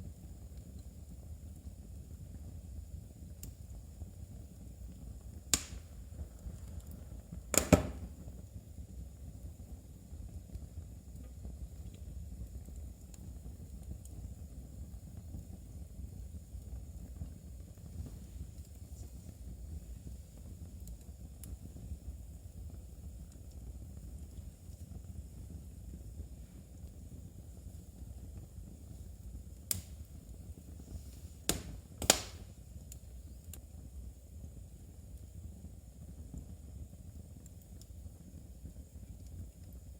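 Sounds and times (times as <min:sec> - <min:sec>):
fire burning in fireplace: 0:00.0 - 0:39.9.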